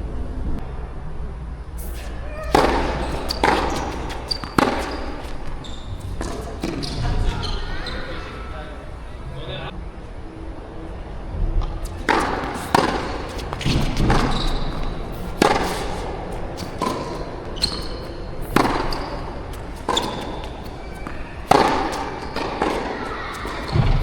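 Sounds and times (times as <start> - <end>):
racket striking tennis ball: 1.8 - 8.4, 11.6 - 24.0
ball bouncing on court: 2.3 - 8.5, 11.6 - 24.0.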